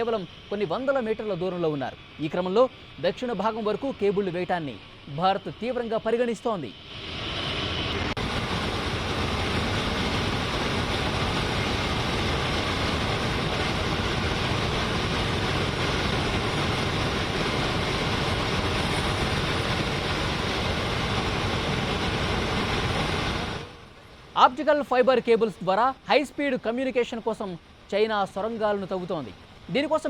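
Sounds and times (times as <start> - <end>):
engine roar: 6.7 - 23.9.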